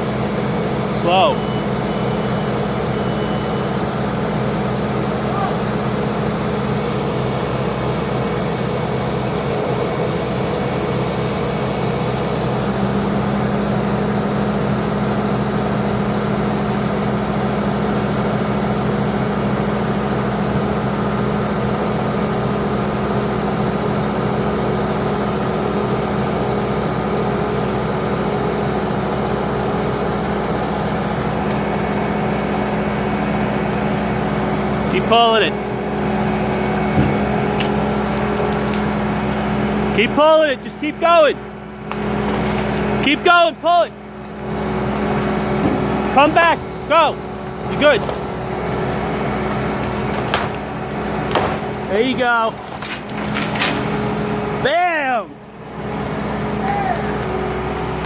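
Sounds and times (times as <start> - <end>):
engine humming: 0.0 - 58.0.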